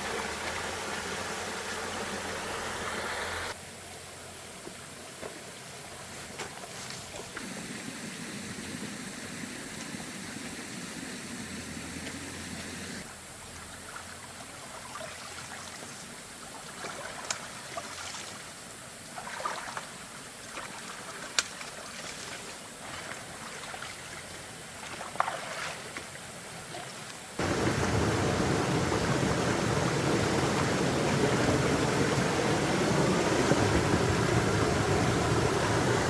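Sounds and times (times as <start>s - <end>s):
running water rushing: 0.0s - 3.6s, 16.5s - 36.0s.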